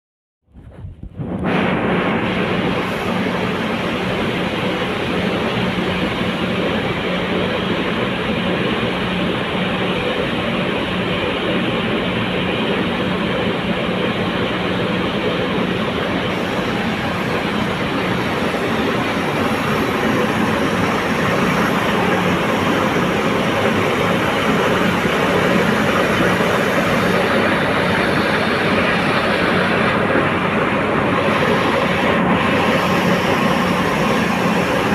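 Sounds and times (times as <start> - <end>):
engine hum: 0.5 - 34.9
drilling rig mechanical din: 13.4 - 34.9.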